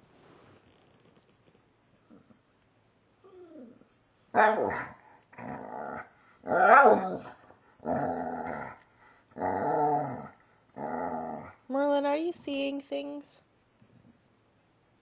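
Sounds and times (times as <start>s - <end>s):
puppy growling and barking: 4.4s - 8.8s, 9.4s - 11.6s.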